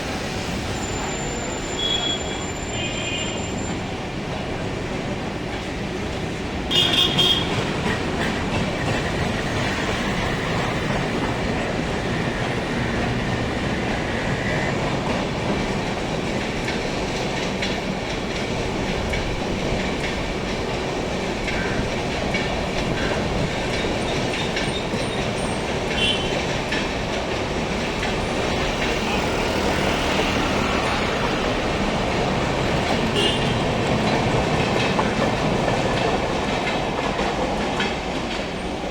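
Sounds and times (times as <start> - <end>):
train coaches rumbling past: 0.0 - 38.9
high wheel squeal: 0.3 - 3.9
wheels clattering over rail joints: 7.1 - 38.9.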